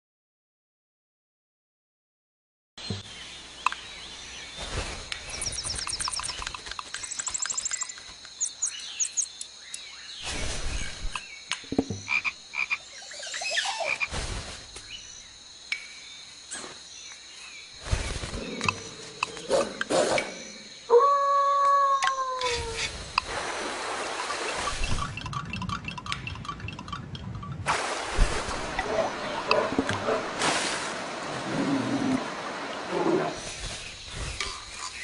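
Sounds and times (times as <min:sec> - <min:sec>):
clicks knocks and thumps: 0:11.6 - 0:12.1
rapid croaking trills: 0:24.9 - 0:27.7.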